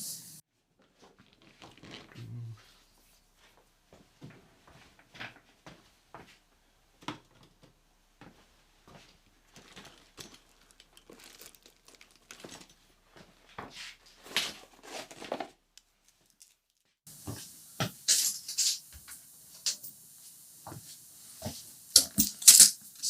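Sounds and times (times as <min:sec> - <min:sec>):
rustling and crinkling: 0:00.6 - 0:17.5.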